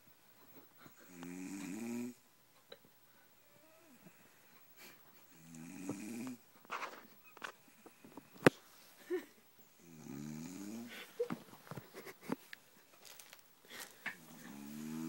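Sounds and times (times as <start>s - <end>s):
woman snoring heavily: 1.1s - 2.2s, 5.3s - 6.4s, 9.8s - 11.1s, 14.2s - 15.0s.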